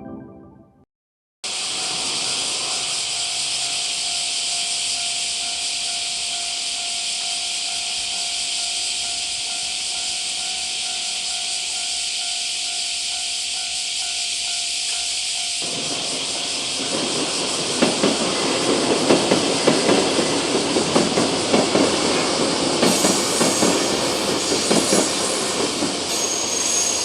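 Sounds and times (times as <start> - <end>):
level-crossing warning bell: 1.8 - 27.0
loud high hiss: 15.2 - 27.0.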